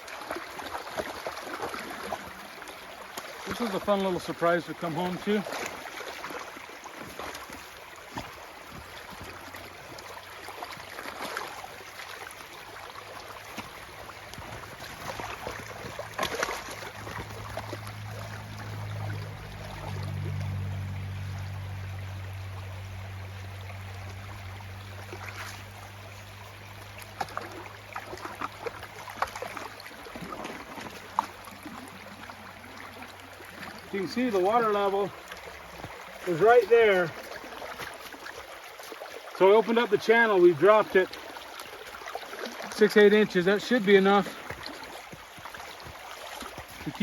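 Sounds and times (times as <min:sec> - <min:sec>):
small splashes and clicks: 0:00.0 - 0:21.7, 0:23.2 - 0:47.0
water running down a ditch: 0:00.0 - 0:47.0
low droning hum: 0:17.2 - 0:25.0.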